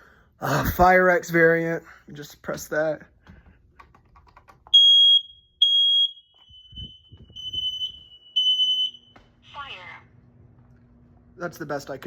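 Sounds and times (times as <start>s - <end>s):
high-pitched smoke alarm beeps: 4.8s - 9.3s
steady alarm tone: 4.8s - 9.7s.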